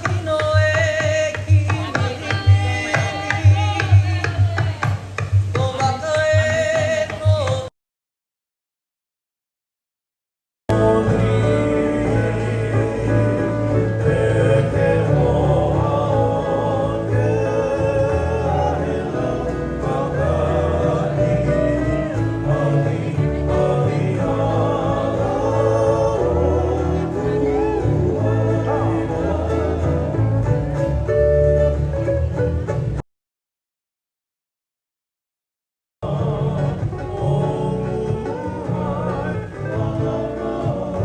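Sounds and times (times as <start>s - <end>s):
group of voices singing: 0.0s - 7.3s, 10.7s - 31.2s, 36.0s - 41.0s
instrumental accompaniment: 10.7s - 33.0s
steady bass line: 10.7s - 33.0s.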